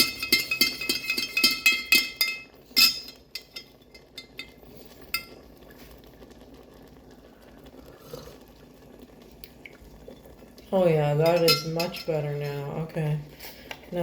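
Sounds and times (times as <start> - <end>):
spoon clinking in a cup: 0.0 - 5.4, 11.2 - 12.6.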